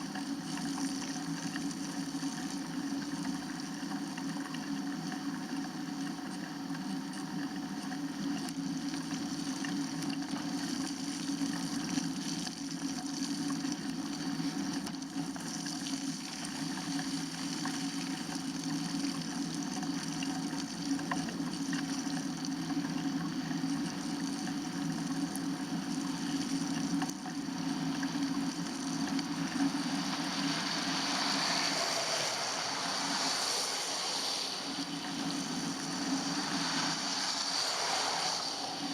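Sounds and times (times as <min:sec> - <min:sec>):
bicycle tyre hiss on wet pavement: 0:29.4 - 0:38.9.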